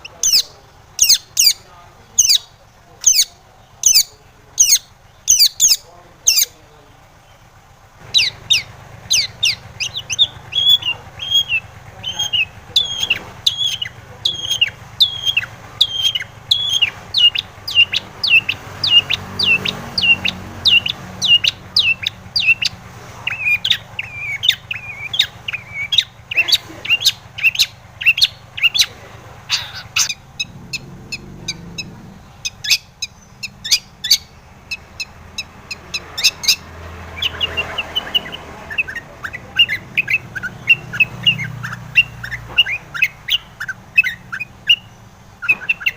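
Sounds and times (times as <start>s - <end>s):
bird singing sharp falling notes: 37.2s - 45.9s.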